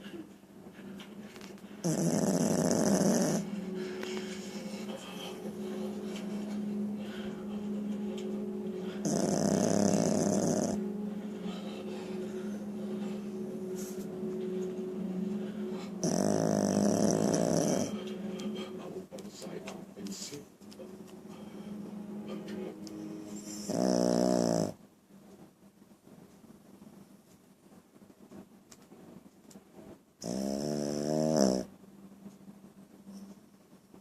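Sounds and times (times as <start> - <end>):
dog snoring: 1.8 - 3.5, 8.8 - 10.8, 15.4 - 18.7, 23.3 - 24.8, 30.2 - 31.7
dog breathing: 1.8 - 7.6, 8.8 - 13.9.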